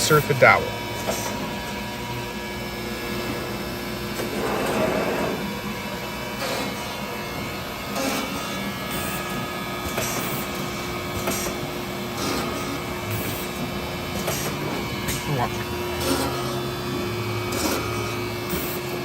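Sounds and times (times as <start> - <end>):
machine humming: 0.7 - 6.8.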